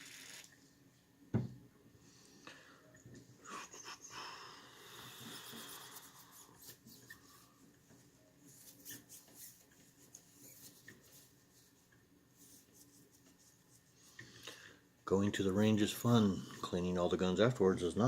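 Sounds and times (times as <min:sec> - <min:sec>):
soft rubbing hiss: 0:04.9 - 0:14.4
light clicks and scratches: 0:05.4 - 0:14.4.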